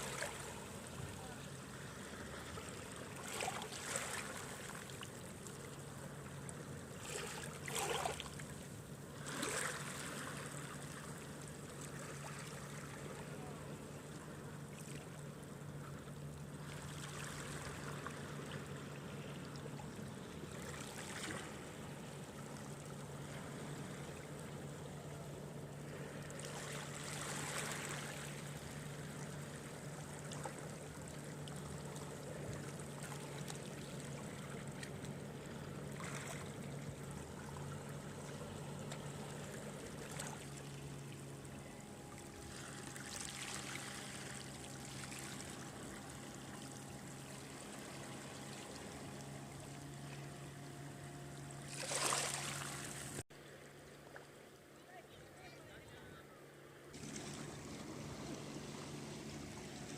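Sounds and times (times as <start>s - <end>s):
steady low hum: 0.0s - 59.9s
wave surging in: 57.0s - 59.9s.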